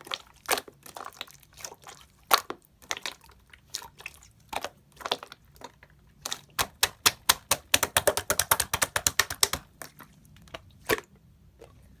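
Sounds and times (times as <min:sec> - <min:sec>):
slime worked with clicking pops: 0:00.0 - 0:11.8.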